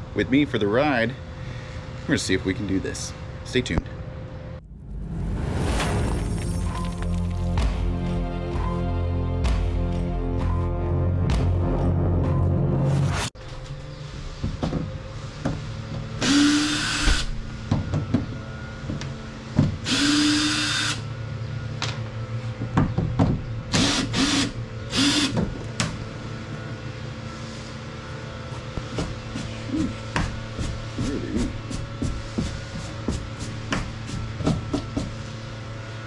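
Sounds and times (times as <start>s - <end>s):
cordless drill whining: 16.2s - 17.3s, 19.9s - 21.0s, 23.7s - 25.4s.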